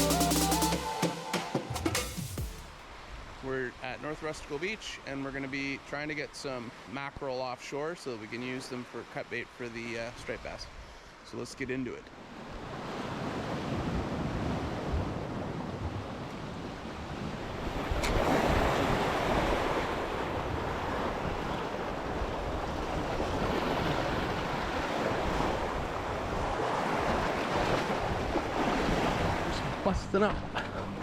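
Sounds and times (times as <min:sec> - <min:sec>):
surf washing onto shore: 0:12.5 - 0:29.9.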